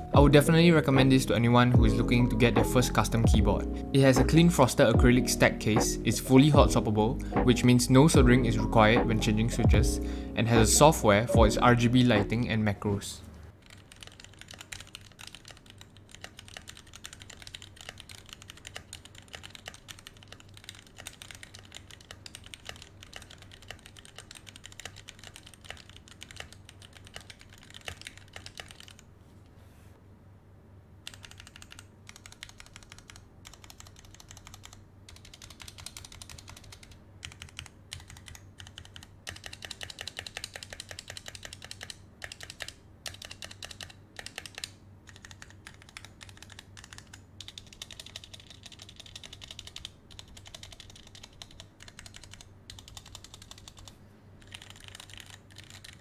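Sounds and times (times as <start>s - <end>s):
mechanical keyboard typing: 13.6s - 29.0s, 31.0s - 56.0s.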